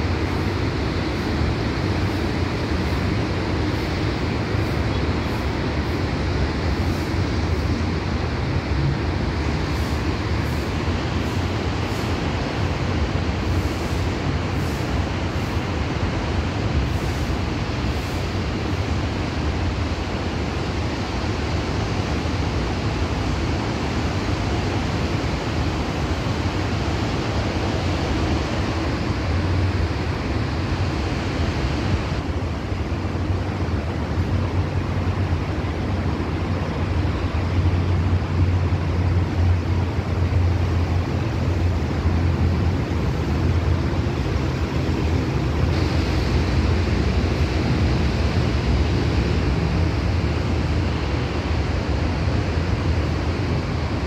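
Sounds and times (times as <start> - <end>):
train idling hum: 0.0 - 54.0
rushing hiss: 9.4 - 21.8, 39.4 - 50.8.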